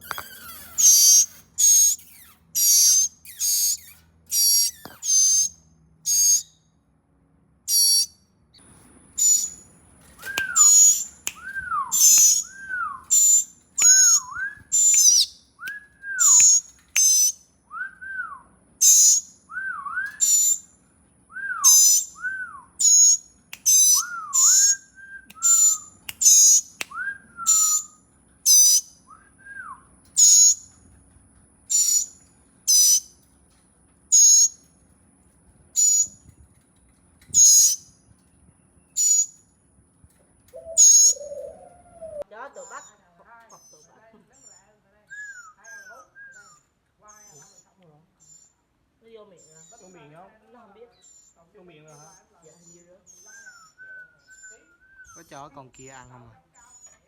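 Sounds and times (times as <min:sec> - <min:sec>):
nestling birds chirping: 0:00.0 - 0:06.6, 0:07.7 - 0:17.6, 0:18.8 - 0:30.9, 0:31.6 - 0:33.2, 0:35.7 - 0:36.2, 0:37.2 - 0:39.4, 0:40.4 - 0:57.0
whistled notes rising and falling: 0:10.2 - 0:16.6.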